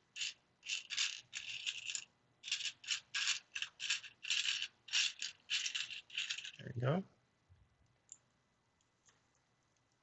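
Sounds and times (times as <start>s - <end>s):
plastic pieces rattling: 0.2s - 6.6s.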